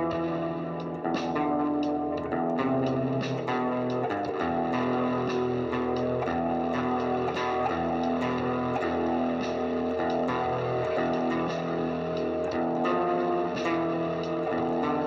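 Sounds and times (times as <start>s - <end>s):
guitar with spring reverb: 0.0s - 15.0s.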